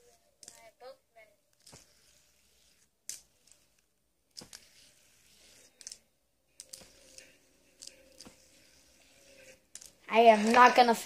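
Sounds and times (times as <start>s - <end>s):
fidget spinner clicks and taps: 0.0s - 0.8s, 1.5s - 6.0s, 6.6s - 8.8s.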